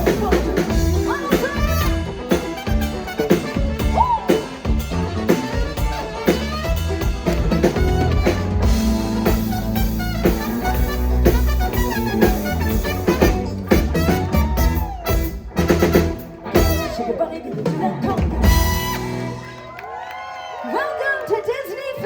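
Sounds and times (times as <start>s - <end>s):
latin pop band playing: 0.0s - 19.9s
drum kit and percussion: 0.0s - 20.0s.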